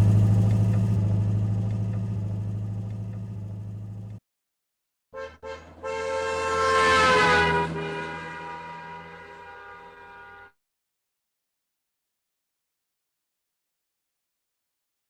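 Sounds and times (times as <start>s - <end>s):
car engine running: 0.0s - 4.2s
car horn toots: 5.2s - 10.6s.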